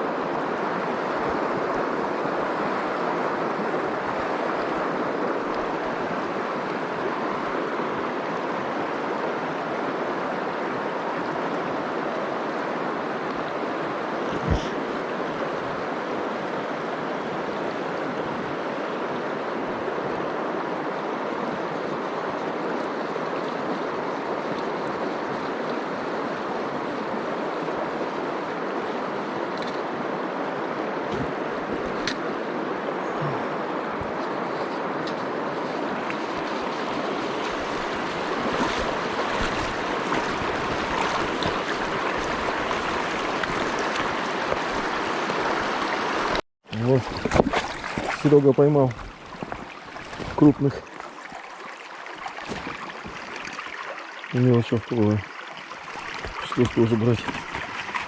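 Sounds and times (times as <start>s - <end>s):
river rushing: 0.0s - 58.0s.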